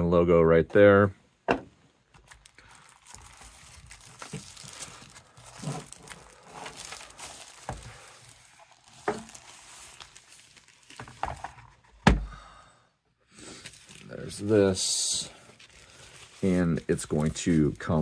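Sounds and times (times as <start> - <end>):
plastic packaging crinkling: 2.1 - 11.8, 13.5 - 18.0.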